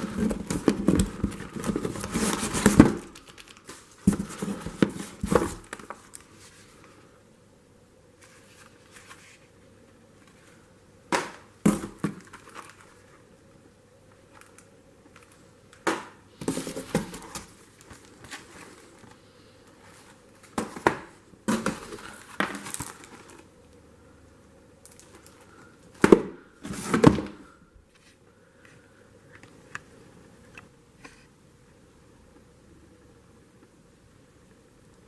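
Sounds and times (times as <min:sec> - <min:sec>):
boxes knocking and clunking: 0:00.0 - 0:03.1, 0:04.0 - 0:05.7, 0:11.1 - 0:12.4, 0:15.9 - 0:17.5, 0:20.5 - 0:22.7, 0:26.0 - 0:27.4
packaging crinkling and rustling: 0:00.0 - 0:06.6, 0:11.7 - 0:13.2, 0:14.3 - 0:23.5.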